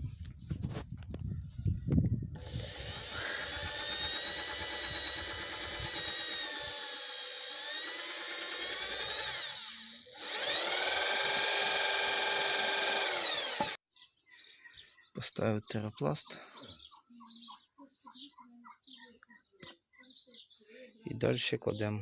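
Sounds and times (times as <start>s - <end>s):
electric drill whining: 2.4s - 13.8s.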